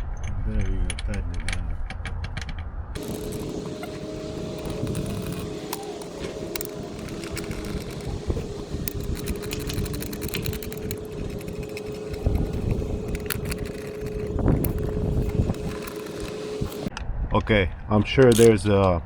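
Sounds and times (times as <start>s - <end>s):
steady mechanical hum: 3.0s - 17.0s, 18.0s - 18.7s.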